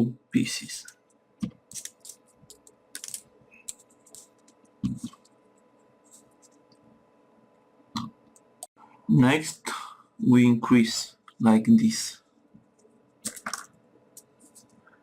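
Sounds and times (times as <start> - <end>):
paper rustles and clicks: 1.7 - 5.2, 13.2 - 13.7.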